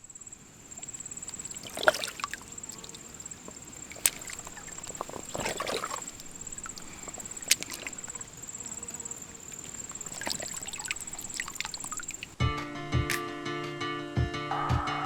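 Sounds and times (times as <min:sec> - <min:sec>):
insect pulsing trill: 0:00.6 - 0:12.4
water sloshing into bladder: 0:00.6 - 0:12.4.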